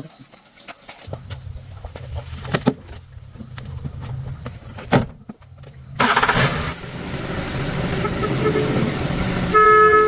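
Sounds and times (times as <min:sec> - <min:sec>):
vehicle engine humming: 0:01.1 - 0:10.0
loud vehicle horn blast: 0:07.9 - 0:10.0.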